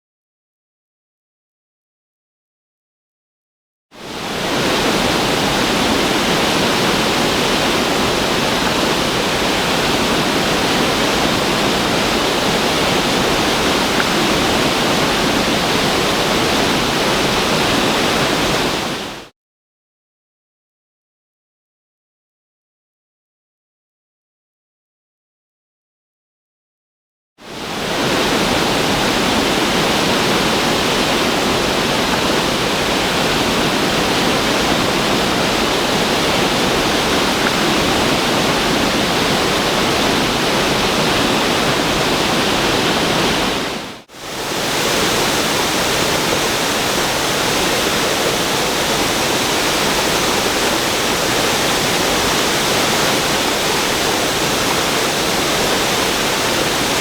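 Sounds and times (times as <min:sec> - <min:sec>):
water roaring over spillway: 0:04.0 - 0:19.3, 0:27.4 - 0:57.0.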